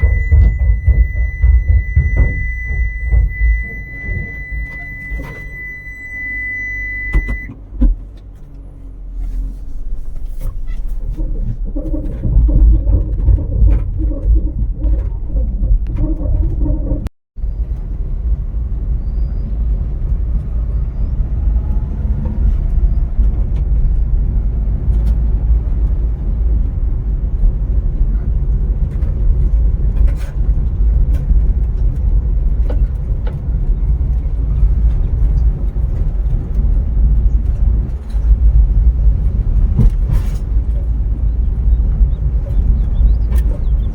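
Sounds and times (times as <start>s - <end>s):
steady high tone: 0.0s - 7.5s
vehicle engine and road noise: 0.0s - 43.9s.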